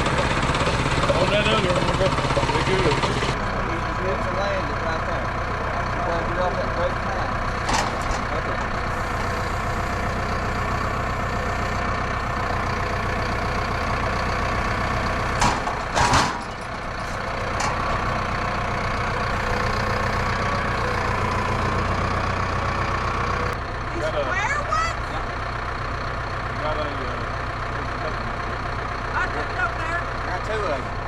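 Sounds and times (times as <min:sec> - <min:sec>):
sawmill gasoline engine running: 0:00.0 - 0:31.0.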